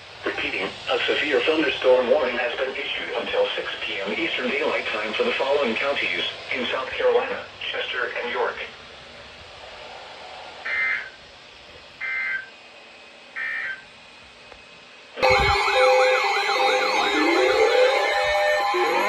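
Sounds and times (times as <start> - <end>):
digital data tones: 15.2 - 19.0
wailing sirens: 15.2 - 19.0.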